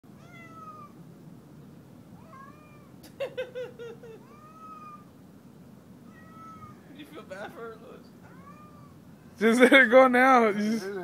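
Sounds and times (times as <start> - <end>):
cat meowing: 0.1 - 1.0, 2.2 - 3.0, 4.2 - 5.1, 6.0 - 6.9, 8.2 - 9.0
cat yowling: 0.1 - 1.0, 2.2 - 3.0, 4.1 - 5.1, 6.0 - 6.9, 8.2 - 9.0.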